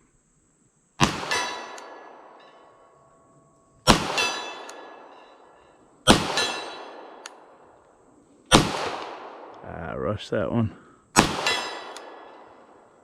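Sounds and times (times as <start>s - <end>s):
pistol shots: 1.0s - 2.4s, 3.8s - 5.2s, 6.0s - 7.6s, 8.5s - 9.6s, 11.2s - 12.8s
steel target ringing clang: 1.2s - 7.4s, 11.4s - 12.7s.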